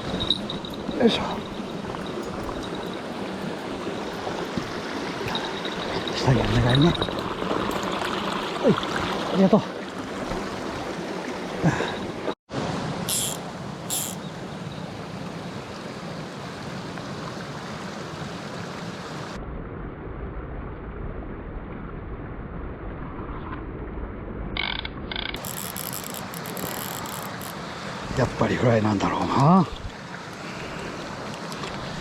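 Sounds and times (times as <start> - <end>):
stream flowing: 0.0 - 19.4, 24.6 - 32.0.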